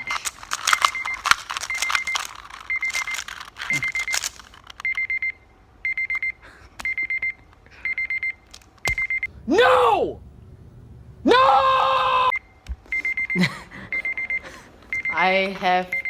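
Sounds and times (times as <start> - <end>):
puzzle cube clicking clatter: 0.0 - 5.0
digital timer alarm beeping: 1.0 - 4.1, 4.8 - 9.3, 12.9 - 15.3.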